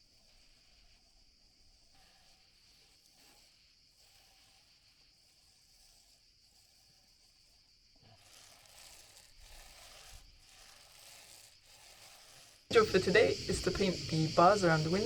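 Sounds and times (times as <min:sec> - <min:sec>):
faint outdoor background hiss: 0:11.6 - 0:15.0.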